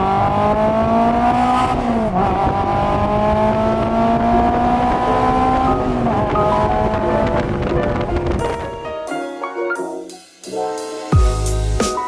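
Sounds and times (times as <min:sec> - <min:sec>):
car engine accelerating hard: 0:00.0 - 0:08.6.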